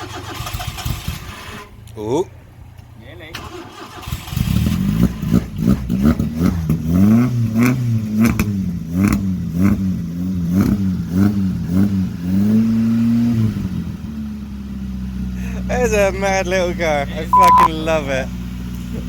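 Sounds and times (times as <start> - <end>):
sharp engine cracks: 0.0 - 2.0, 2.8 - 6.1
car engine revving and idling: 0.0 - 19.0.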